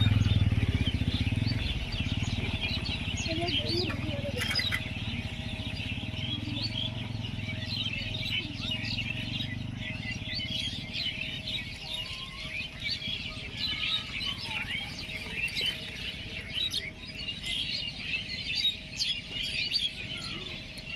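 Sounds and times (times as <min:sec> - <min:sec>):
steady low rumble: 0:00.0 - 0:11.9
small birds chirping: 0:00.0 - 0:20.9.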